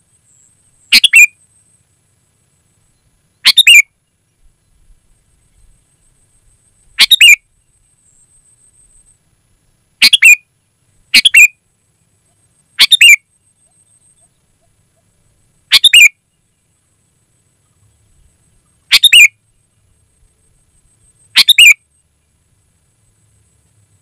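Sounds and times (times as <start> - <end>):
bulbul calling: 0.4 - 1.4, 3.4 - 3.9, 6.8 - 7.5, 10.0 - 10.4, 11.1 - 11.6, 12.3 - 16.2, 17.6 - 19.4, 20.8 - 21.9.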